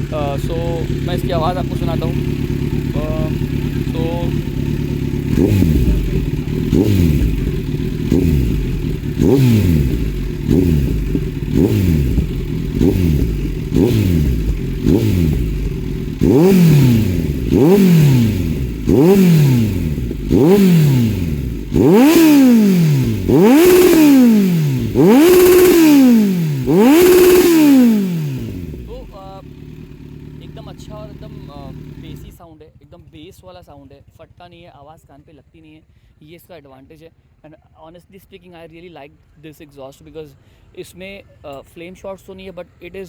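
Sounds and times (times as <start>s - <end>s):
motorcycle engine revving: 0.0s - 32.4s.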